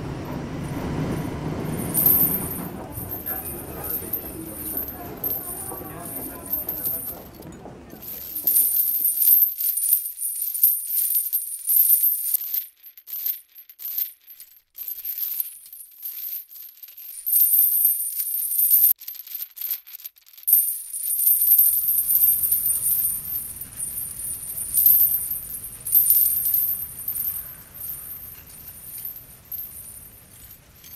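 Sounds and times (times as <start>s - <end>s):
metallic tinkling and jingling: 0.5s - 13.0s, 20.5s - 30.9s.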